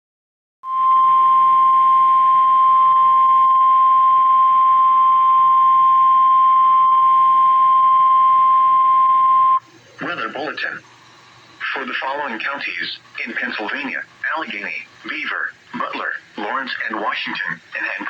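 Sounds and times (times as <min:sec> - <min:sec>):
loud steady alarm tone: 0:00.6 - 0:09.6
faint radio hiss: 0:09.2 - 0:18.0.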